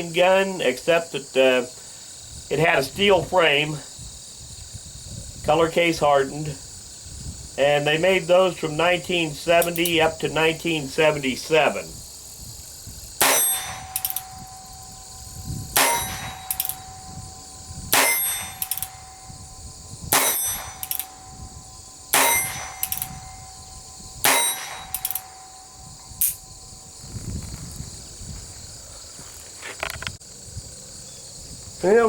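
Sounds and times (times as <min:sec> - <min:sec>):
ringing tone after shot: 0:13.2 - 0:26.6.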